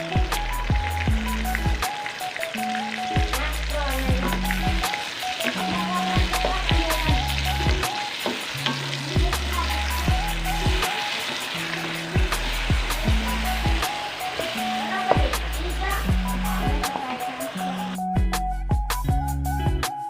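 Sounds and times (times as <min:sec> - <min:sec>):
food sizzling in frying pan: 0:00.0 - 0:18.0
background music: 0:00.0 - 0:20.0.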